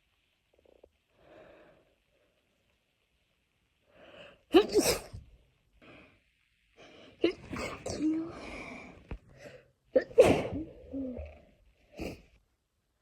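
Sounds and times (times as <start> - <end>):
soft breaths: 0.5 - 2.8, 3.8 - 4.5, 5.7 - 9.9
woman sneezing: 4.5 - 5.2, 10.0 - 11.3.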